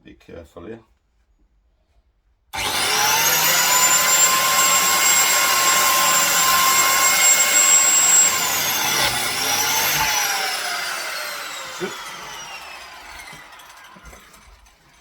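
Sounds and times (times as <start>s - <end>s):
biscuit joiner whining: 2.6s - 15.0s.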